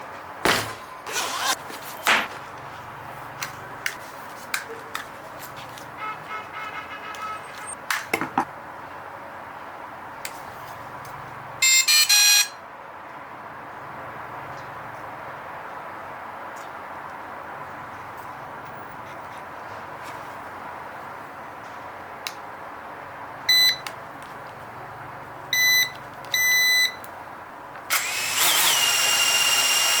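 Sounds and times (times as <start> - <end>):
drone motors whining: 27.9 - 30.0.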